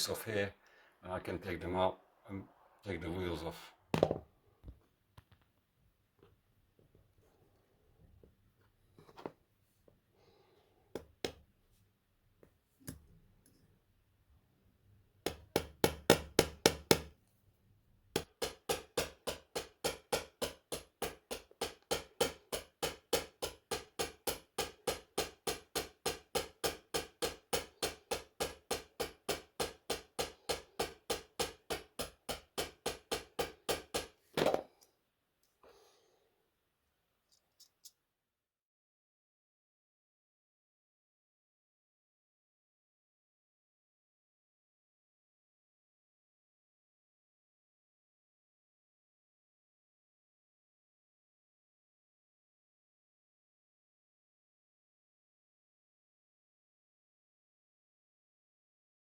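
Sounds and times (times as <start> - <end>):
hammer tapping on metal: 15.3 - 17.1, 18.2 - 34.2.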